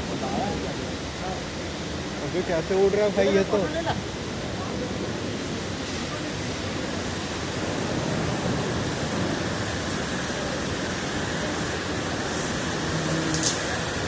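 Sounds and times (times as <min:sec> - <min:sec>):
furnace and machinery roar: 0:07.0 - 0:14.0.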